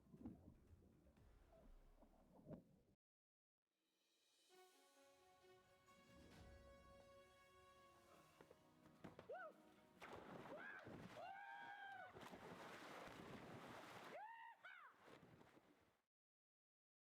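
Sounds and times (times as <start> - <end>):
faint water splashing: 9.4 - 16.0
people shouting and yelling: 10.4 - 12.2, 14.1 - 15.0.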